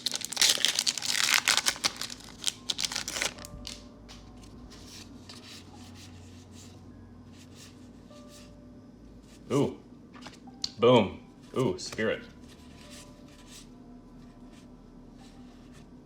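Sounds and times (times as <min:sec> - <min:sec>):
foil wrapper crinkling: 0:00.0 - 0:03.8
trading cards being handled: 0:00.0 - 0:06.0.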